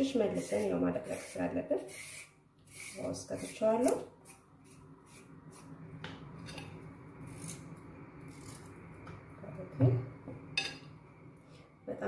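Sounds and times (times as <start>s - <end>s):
peeler scraping carrot: 0.1s - 5.7s, 7.2s - 7.7s, 8.3s - 8.8s.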